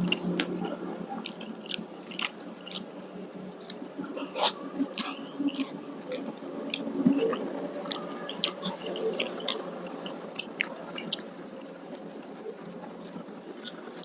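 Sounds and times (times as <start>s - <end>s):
person chewing food: 1.2s - 2.9s, 3.6s - 11.3s.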